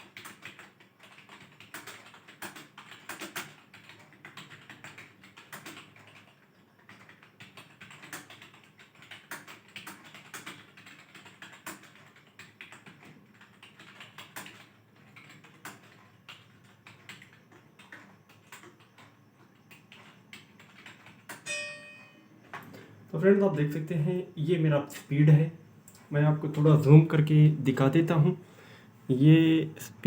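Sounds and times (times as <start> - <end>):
fast typing on keyboard: 0.0 - 21.5.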